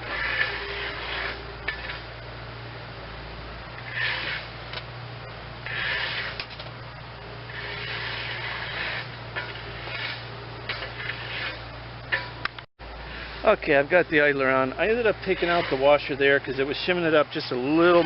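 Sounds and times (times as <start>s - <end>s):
metal parts scraping: 0.0s - 2.1s, 5.6s - 6.7s, 7.5s - 12.5s, 15.1s - 16.0s
steady low hum: 0.0s - 18.0s.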